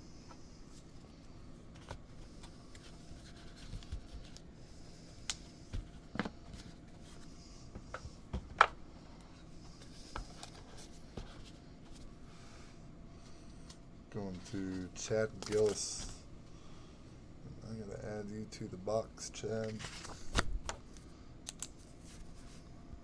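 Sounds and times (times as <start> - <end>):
trading cards rustling: 1.7 - 8.2, 14.2 - 16.2, 19.4 - 22.5.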